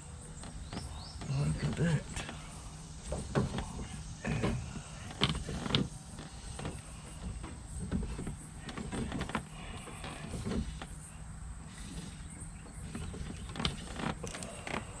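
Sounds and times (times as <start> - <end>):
hands knocking and rustling: 0.4 - 11.1.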